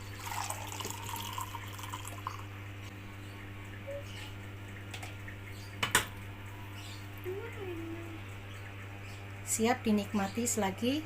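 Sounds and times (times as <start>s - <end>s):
drink poured through strainer: 0.2s - 2.4s.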